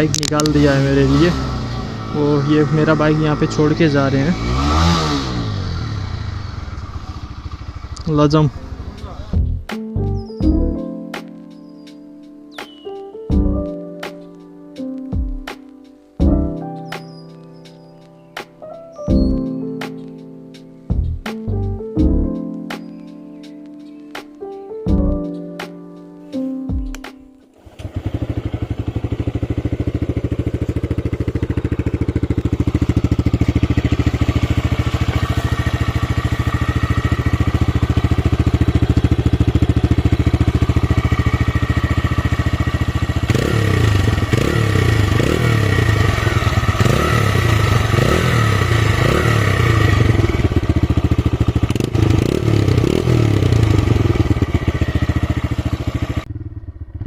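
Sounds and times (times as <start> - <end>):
motorcycle engine idling and revving: 0.0 - 11.0, 19.1 - 19.6, 27.6 - 57.0.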